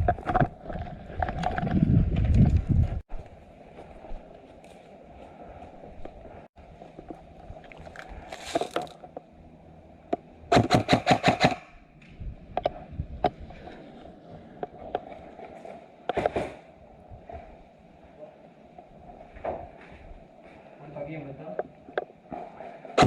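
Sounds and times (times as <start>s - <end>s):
airsoft gun firing: 10.5s - 11.7s.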